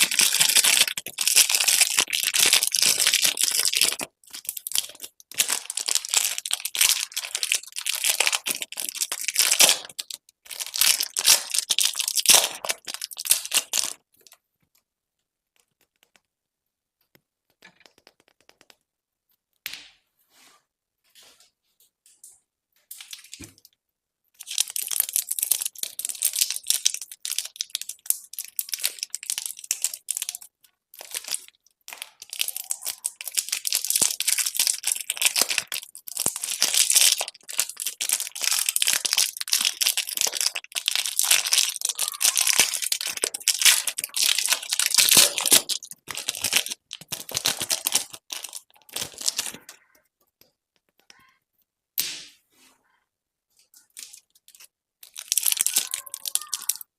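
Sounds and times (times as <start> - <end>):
candy wrappers crinkling: 0.0 - 14.4, 23.0 - 23.4, 24.4 - 49.8, 53.8 - 56.9.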